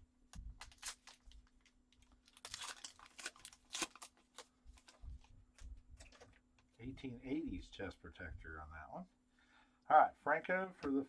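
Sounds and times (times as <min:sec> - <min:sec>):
cards rustling and clicking: 0:02.4 - 0:06.4.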